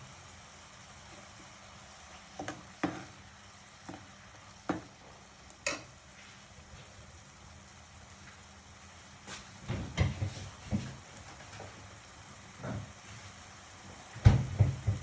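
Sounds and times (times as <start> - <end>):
faint sizzle in pan: 0.0 - 15.0
spoon knocking against pan: 4.6 - 4.9.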